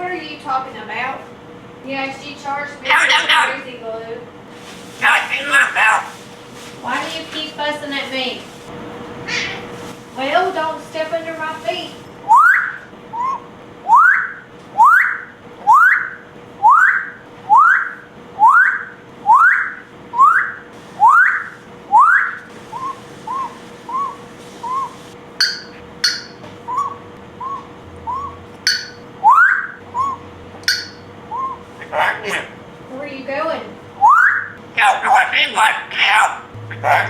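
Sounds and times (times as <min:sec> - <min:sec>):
parrot whistling: 0:02.8 - 0:03.7, 0:05.0 - 0:06.2, 0:12.2 - 0:32.6, 0:34.0 - 0:37.0
parrot squeaks: 0:02.9 - 0:03.6, 0:09.3 - 0:09.7, 0:12.3 - 0:32.6.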